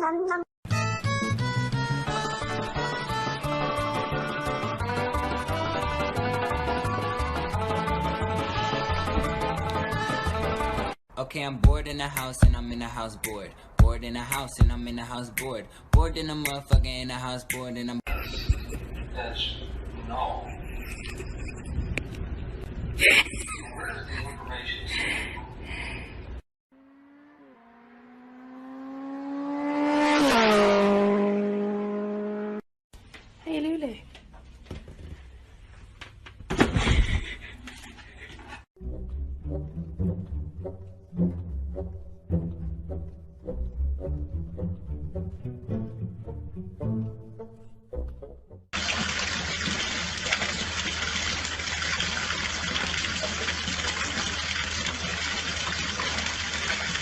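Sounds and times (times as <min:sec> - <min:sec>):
vehicle engine passing by: 0:26.8 - 0:32.6
running water rushing: 0:48.8 - 0:57.0.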